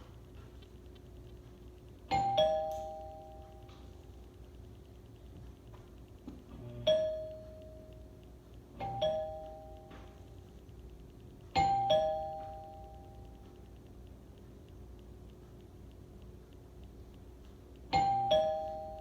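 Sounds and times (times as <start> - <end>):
ding-dong doorbell chime: 2.1 - 3.8, 6.8 - 7.8, 8.8 - 10.2, 11.6 - 13.2, 17.9 - 19.0.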